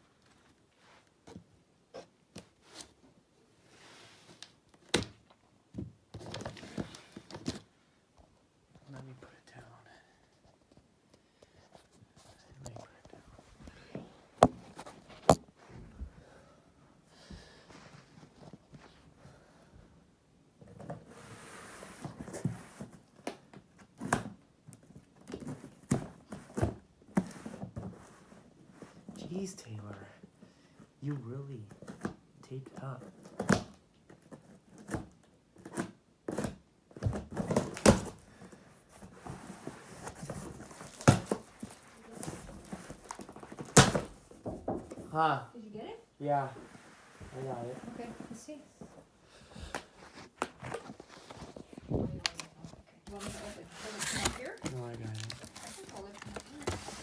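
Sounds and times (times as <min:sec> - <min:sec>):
crackling rustle: 0:50.8 - 0:57.0
paper crinkling and tearing: 0:53.1 - 0:57.0.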